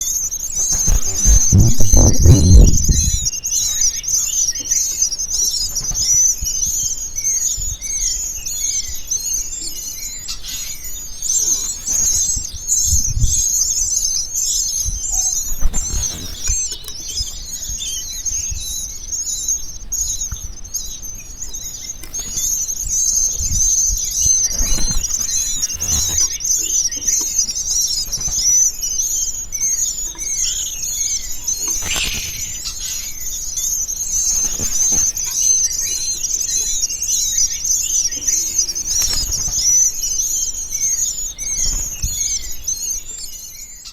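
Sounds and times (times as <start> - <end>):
birds rustling in nest box: 0.0 - 43.6
nestlings chirping: 0.0 - 43.9.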